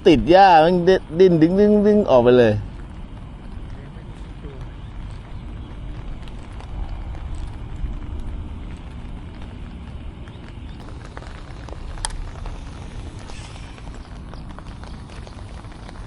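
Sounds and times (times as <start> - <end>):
wind buffeting microphone: 0.0 - 16.0
small clicks: 3.6 - 16.0.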